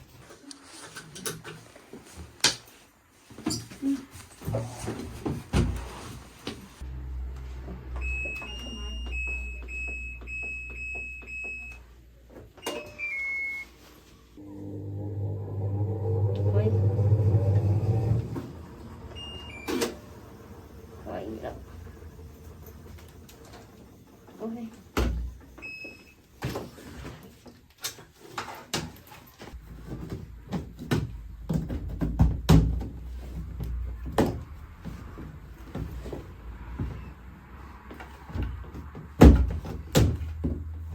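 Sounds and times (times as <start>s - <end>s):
low motor hum: 14.4s - 23.8s.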